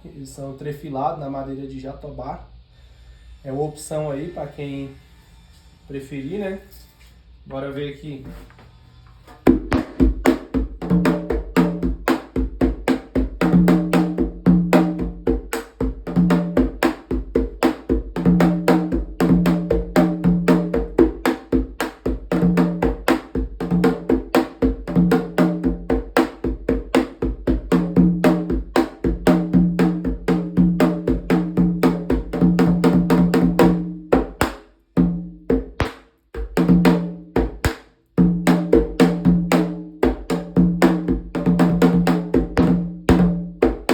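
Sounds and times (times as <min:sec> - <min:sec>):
hand drum played with sticks: 0:09.5 - 0:43.9.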